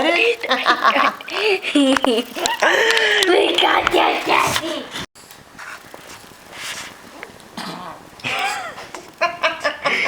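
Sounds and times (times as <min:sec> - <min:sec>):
person's voice: 0:02.7 - 0:05.0
dog burping: 0:07.6 - 0:08.6.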